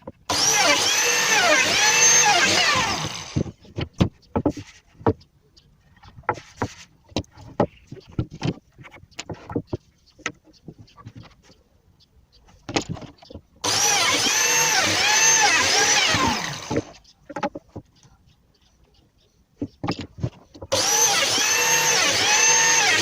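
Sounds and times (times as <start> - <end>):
wood and tools knocking: 0.0 - 5.3, 5.9 - 11.6, 12.5 - 18.2, 19.6 - 23.0
power tool motor running: 0.3 - 3.5, 13.6 - 17.0, 20.7 - 23.0.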